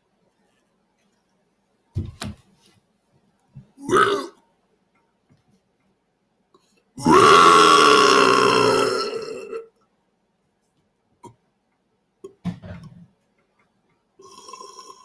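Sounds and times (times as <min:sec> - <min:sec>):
man belching: 0:03.8 - 0:04.4, 0:07.0 - 0:09.7, 0:14.2 - 0:15.0.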